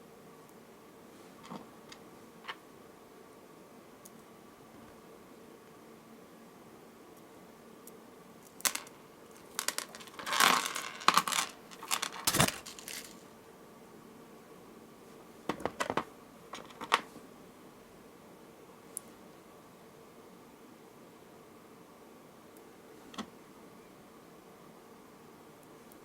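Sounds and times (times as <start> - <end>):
beads clicking together: 8.5 - 13.2.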